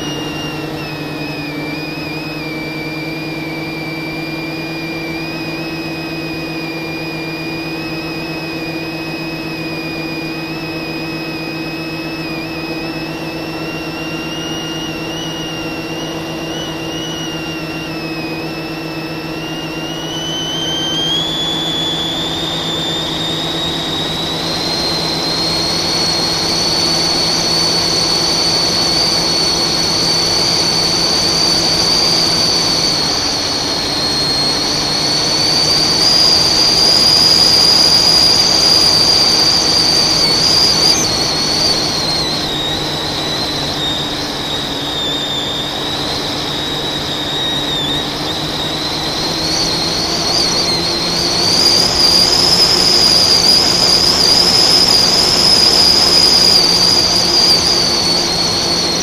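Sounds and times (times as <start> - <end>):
drone motors whining: 0.0 - 59.0.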